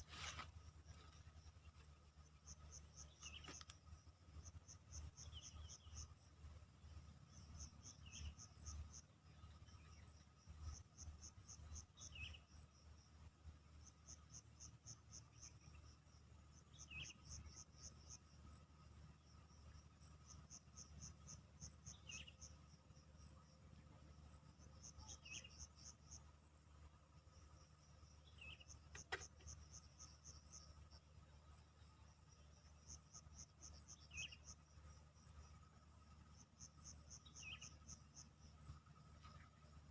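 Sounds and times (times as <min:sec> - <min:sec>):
insects chirping: 0:13.8 - 0:39.9.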